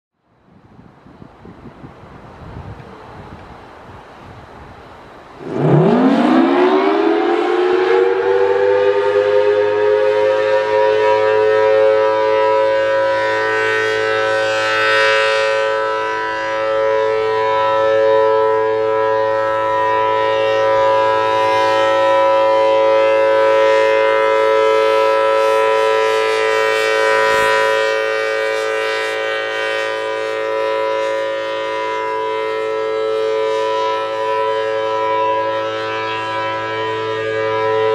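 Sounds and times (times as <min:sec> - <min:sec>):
dual-tone siren winding up: 0:05.4 - 0:11.0.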